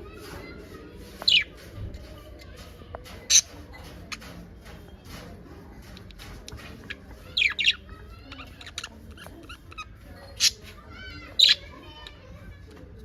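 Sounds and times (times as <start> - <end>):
parakeets chattering: 0.0 - 12.5
parakeet squawks: 1.2 - 1.5, 6.8 - 10.7, 11.3 - 11.7.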